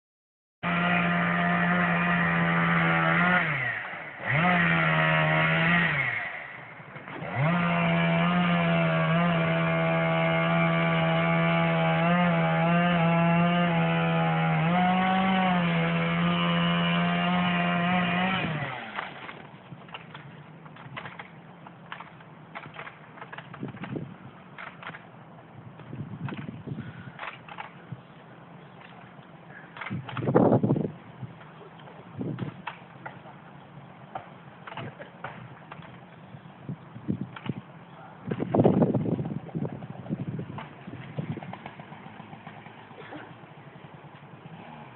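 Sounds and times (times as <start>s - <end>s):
chainsaw cutting wood: 0.6s - 25.1s, 25.7s - 28.0s, 28.7s - 43.4s, 44.1s - 44.9s.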